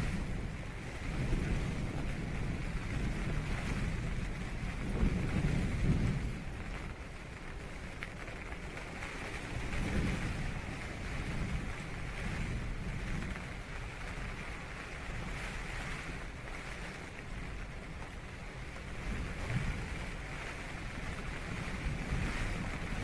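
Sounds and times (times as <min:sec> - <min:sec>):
heavy rain on tent fabric: 0:00.0 - 0:23.0
low storm rumble: 0:00.0 - 0:23.0.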